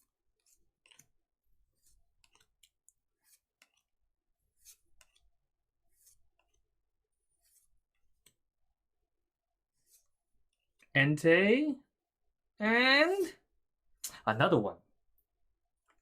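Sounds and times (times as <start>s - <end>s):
cards flipping and sliding: 0.0s - 8.4s, 9.7s - 10.9s.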